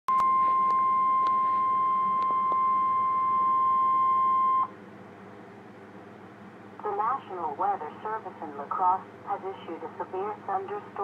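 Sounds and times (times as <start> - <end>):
faint radio hiss with crackles: 0.1 - 2.8, 5.5 - 11.0
steady high alarm beep: 0.1 - 4.7.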